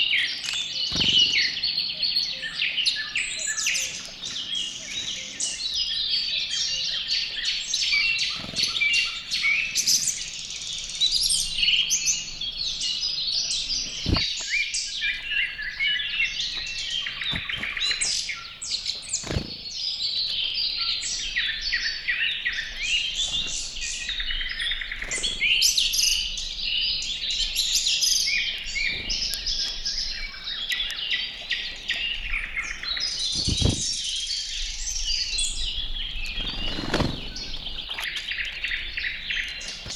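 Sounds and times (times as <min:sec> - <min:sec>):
songbirds chirping: 0:00.0 - 0:39.9.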